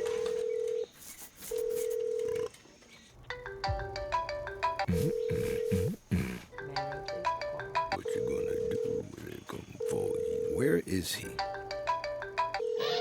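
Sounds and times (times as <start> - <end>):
telephone ringback tone: 0.0 - 0.9, 1.5 - 2.5, 3.4 - 5.9, 6.6 - 9.1, 9.8 - 10.7, 11.4 - 13.0
marimba-style phone ringtone melody: 3.3 - 6.0, 6.6 - 9.1, 9.8 - 10.7, 11.3 - 13.0.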